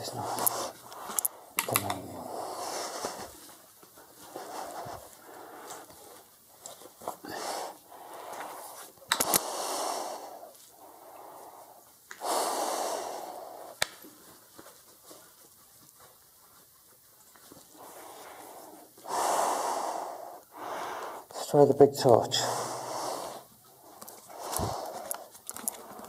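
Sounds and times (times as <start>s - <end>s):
person breathing heavily: 0.0s - 3.5s, 4.2s - 6.2s, 7.1s - 13.8s, 17.8s - 21.3s, 22.3s - 26.0s.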